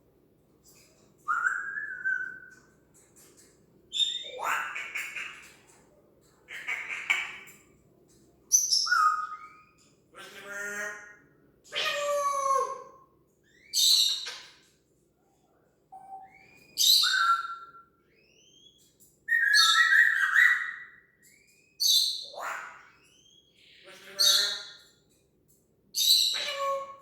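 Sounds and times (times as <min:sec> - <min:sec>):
parrot squawking: 0:04.0 - 0:05.6, 0:06.5 - 0:07.5, 0:10.2 - 0:12.9, 0:19.4 - 0:20.9, 0:21.9 - 0:23.0, 0:23.8 - 0:24.8, 0:26.0 - 0:27.0.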